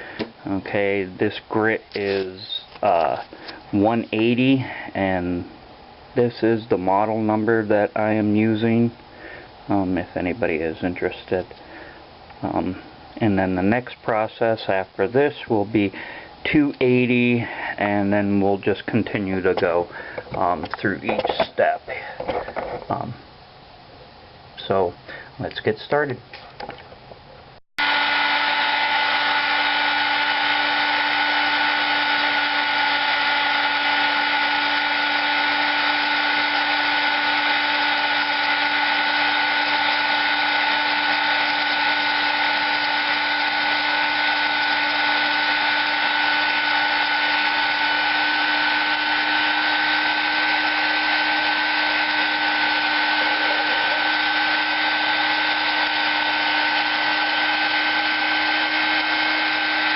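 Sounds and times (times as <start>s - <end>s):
rotary tool whine: 27.8s - 59.9s.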